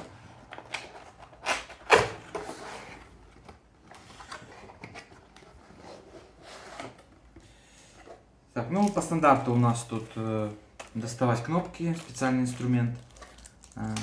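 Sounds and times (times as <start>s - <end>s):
cardboard sliding rustle: 5.5s - 7.1s.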